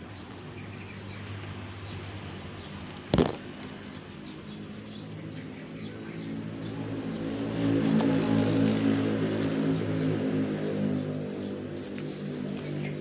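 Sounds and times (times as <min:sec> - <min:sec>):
sharp knock: 0:03.1 - 0:03.4.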